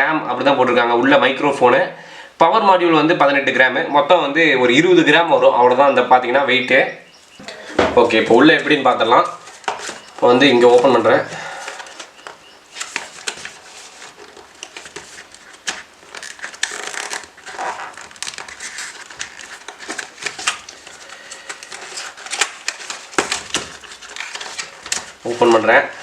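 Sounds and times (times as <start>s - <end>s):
packaging crinkling: 7.1s - 26.0s.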